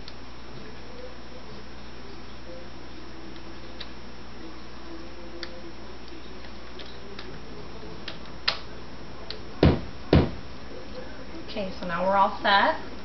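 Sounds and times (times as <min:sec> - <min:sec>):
sharp knocks: 0:09.6 - 0:10.4.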